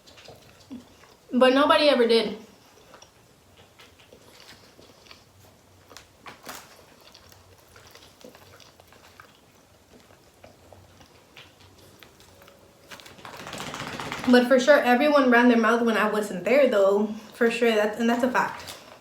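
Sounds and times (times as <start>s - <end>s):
person chewing food: 0.0s - 1.3s, 2.4s - 13.4s.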